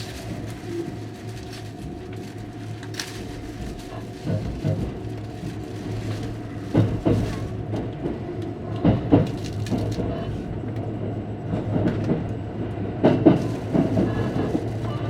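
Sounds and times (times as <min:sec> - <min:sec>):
wheels clacking over rail joints: 0:00.0 - 0:10.2, 0:13.0 - 0:15.0
train low rumble: 0:00.0 - 0:15.0.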